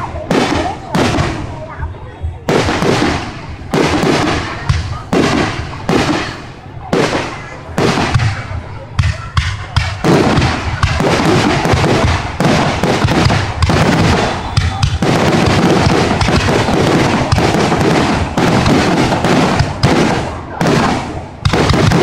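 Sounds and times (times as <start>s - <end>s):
fireworks bursting: 0.0s - 22.0s.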